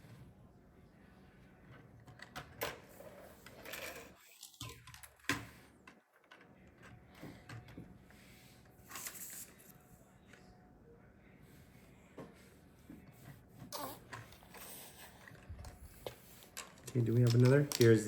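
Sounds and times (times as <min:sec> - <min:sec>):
plastic bricks clicking: 0:16.6 - 0:18.0.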